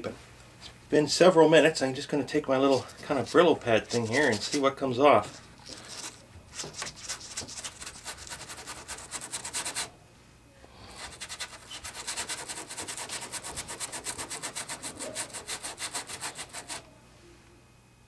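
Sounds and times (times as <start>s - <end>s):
scouring pad scrubbing wood: 11.2s - 16.8s.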